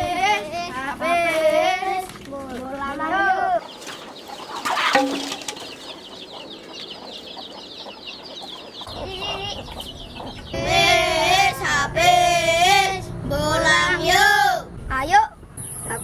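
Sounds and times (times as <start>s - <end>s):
child singing: 0.0s - 3.6s, 10.5s - 15.3s
birds chirping: 3.5s - 11.8s.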